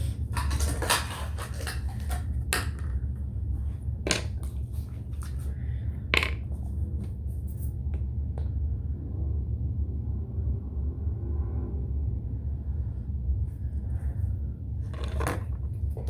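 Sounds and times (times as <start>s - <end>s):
containers knocking and clinking: 0.0s - 3.1s, 4.1s - 5.4s, 6.2s - 6.6s, 14.9s - 16.0s
steady low hum: 0.0s - 16.0s.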